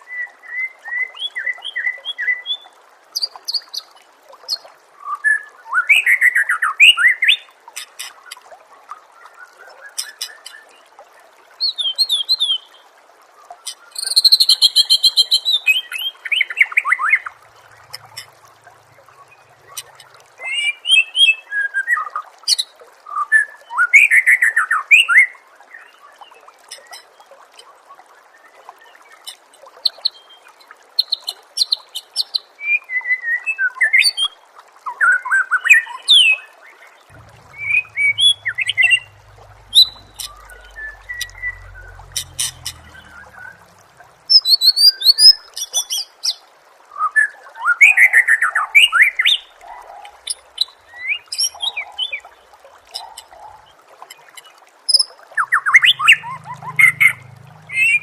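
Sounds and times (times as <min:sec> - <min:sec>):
songbird whistling and trilling: 0:44.3 - 0:46.0.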